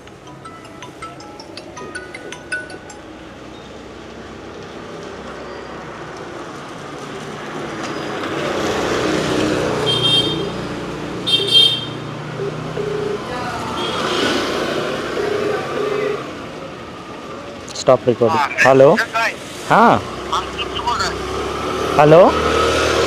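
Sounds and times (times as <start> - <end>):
road traffic noise: 0.0 - 23.0
horn toots: 11.2 - 14.5.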